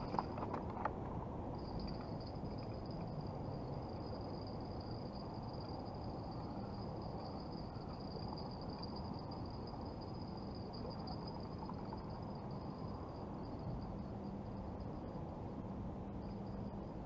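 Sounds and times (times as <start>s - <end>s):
low background rumble: 0.0s - 17.0s
insects trilling: 1.6s - 15.2s.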